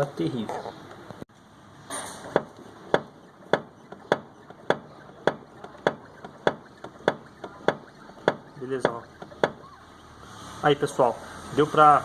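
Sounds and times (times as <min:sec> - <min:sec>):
steering box knocking clicks: 0:02.3 - 0:09.6.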